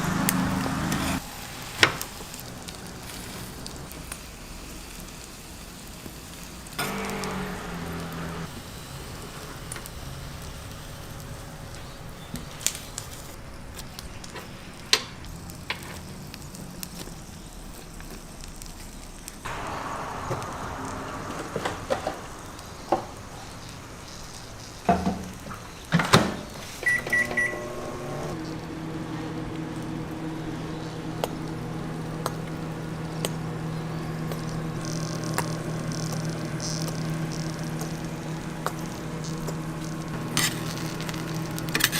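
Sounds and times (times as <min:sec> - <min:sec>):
microwave oven humming: 0:00.0 - 0:16.8, 0:19.5 - 0:41.9
keypad beeps: 0:26.8 - 0:27.7.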